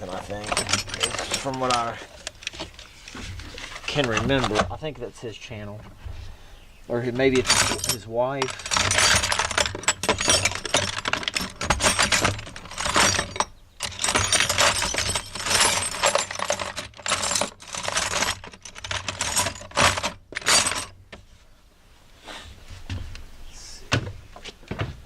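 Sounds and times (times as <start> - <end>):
metal tools clattering: 0.0 - 4.8, 7.2 - 21.0.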